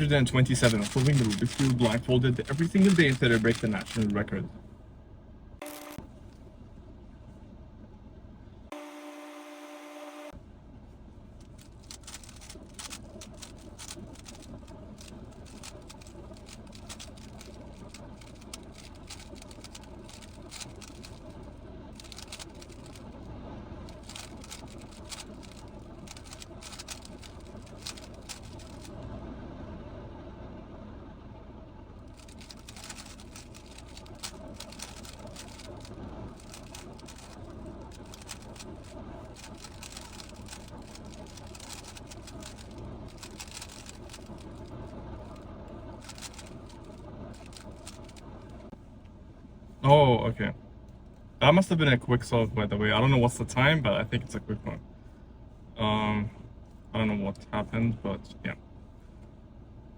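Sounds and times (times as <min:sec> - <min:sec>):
low hum: 0:00.0 - 0:59.9
puzzle cube clicking: 0:00.4 - 0:04.1, 0:11.4 - 0:21.3, 0:22.0 - 0:23.1, 0:23.9 - 0:28.9, 0:32.2 - 0:44.7, 0:46.0 - 0:48.2.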